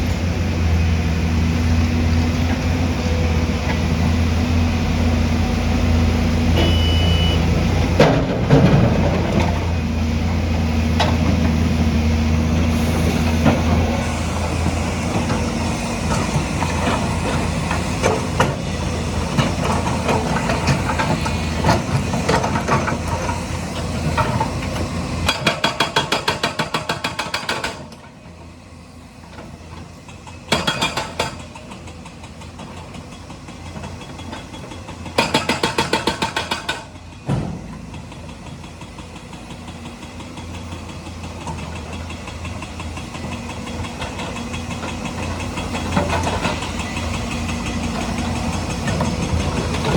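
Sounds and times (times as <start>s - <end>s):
heavy diesel engine running: 0.0s - 25.5s, 31.3s - 49.9s
hydraulic breaker hammering: 6.5s - 7.4s.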